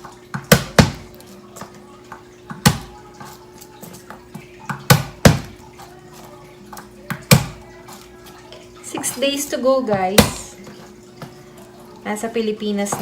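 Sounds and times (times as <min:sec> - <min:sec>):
dishes knocking on hard surface: 0:00.3 - 0:03.4, 0:04.0 - 0:05.6.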